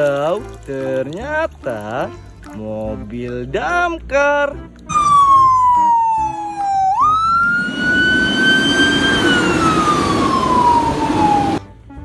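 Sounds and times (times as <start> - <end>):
fire engine siren wailing: 4.9 - 11.6.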